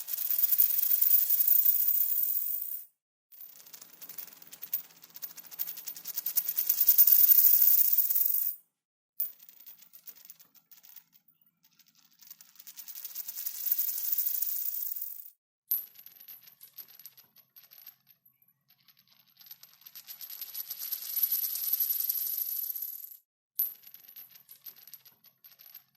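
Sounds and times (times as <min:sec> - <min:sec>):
coin spinning on hard surface: 0:00.2 - 0:02.9, 0:03.6 - 0:08.6, 0:09.2 - 0:18.1, 0:18.7 - 0:25.8.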